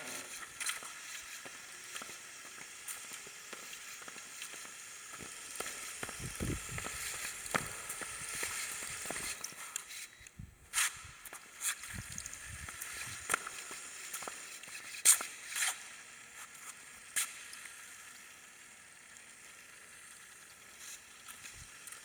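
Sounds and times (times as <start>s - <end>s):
toy car motor running: 0.0s - 22.0s.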